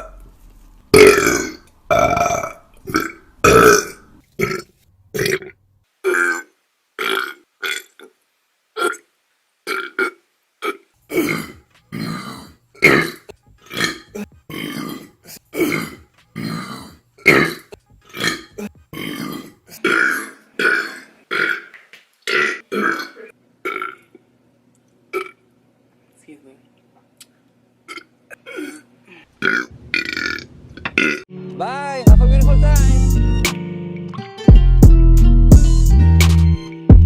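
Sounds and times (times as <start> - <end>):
woman burping: 11.1 - 21.7.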